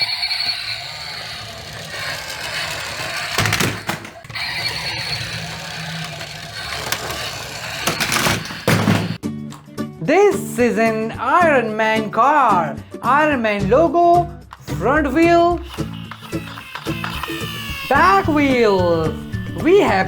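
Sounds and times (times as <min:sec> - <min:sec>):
toy cars rolling on plastic track: 0:00.0 - 0:09.2, 0:15.6 - 0:20.0.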